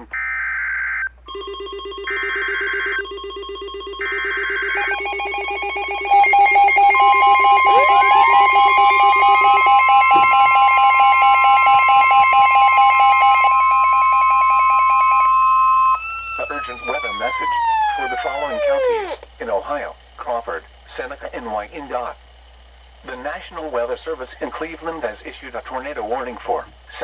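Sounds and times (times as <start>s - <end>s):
pulsing beeps: 1.3s - 19.2s
steady attention tone: 1.3s - 19.3s
warbling data bursts: 3.8s - 19.2s
siren-like gliding tones: 4.0s - 19.2s.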